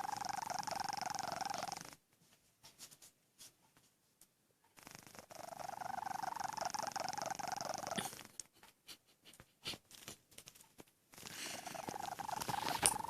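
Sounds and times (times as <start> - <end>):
cat snoring: 0.0 - 2.0, 4.8 - 8.4, 11.2 - 13.0.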